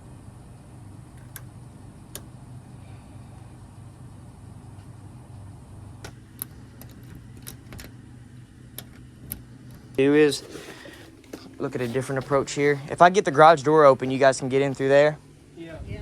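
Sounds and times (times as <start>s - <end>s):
steady low hum: 0.0s - 16.0s
lock-picking tools clicking: 1.2s - 1.5s, 6.0s - 8.0s, 8.7s - 10.0s.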